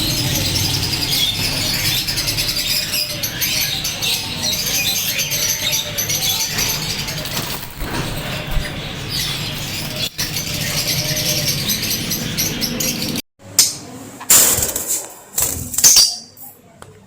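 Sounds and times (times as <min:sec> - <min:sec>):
birds chirping: 0:00.0 - 0:13.2
wings flapping: 0:06.6 - 0:10.8.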